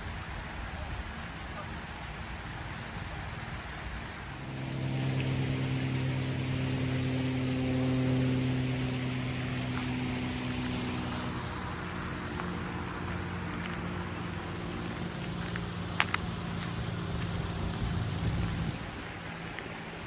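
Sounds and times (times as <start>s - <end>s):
engine hum: 4.2s - 20.0s.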